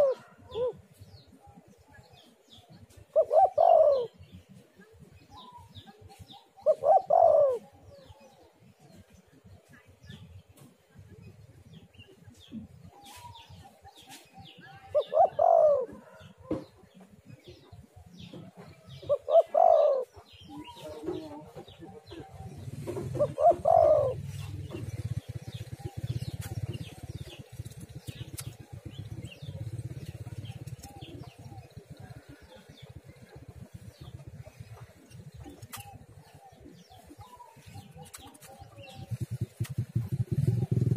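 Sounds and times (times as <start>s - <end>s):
dove cooing: 0.0s - 0.9s, 3.1s - 4.4s, 5.4s - 8.5s, 14.8s - 16.4s, 18.3s - 40.9s.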